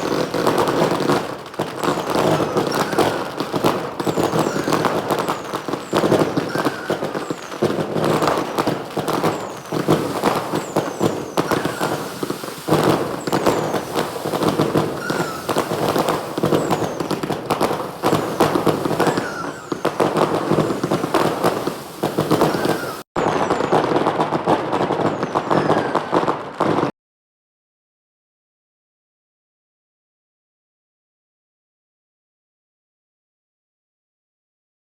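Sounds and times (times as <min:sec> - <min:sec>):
firework whistles: 0:00.0 - 0:23.8, 0:25.0 - 0:26.3
firecrackers crackling: 0:00.0 - 0:26.9.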